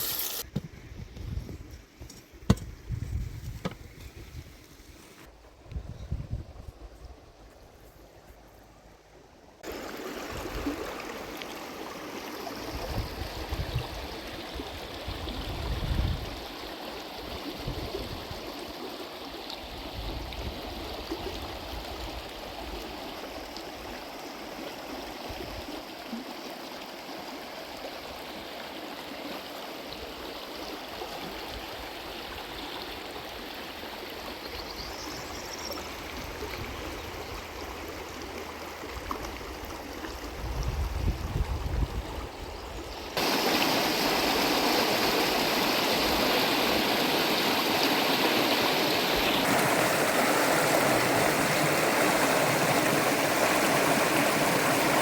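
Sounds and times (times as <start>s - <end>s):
running water rushing: 0.0s - 0.5s, 9.6s - 55.0s.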